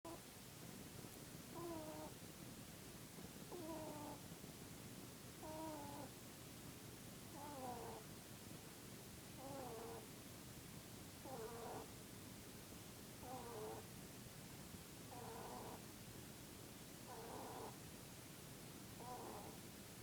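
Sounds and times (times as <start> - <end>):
rabbit snoring: 1.0 - 2.2, 3.2 - 4.4, 5.4 - 6.2, 7.3 - 8.1, 9.4 - 10.1, 11.2 - 12.0, 13.2 - 14.0, 15.0 - 15.9, 17.0 - 17.9, 19.0 - 19.7.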